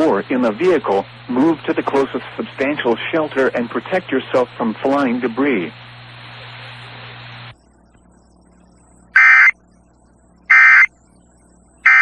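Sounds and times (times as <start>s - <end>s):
broadcast hiss with low hum: 0.0s - 12.0s
warbling two-tone digital code: 9.2s - 9.5s.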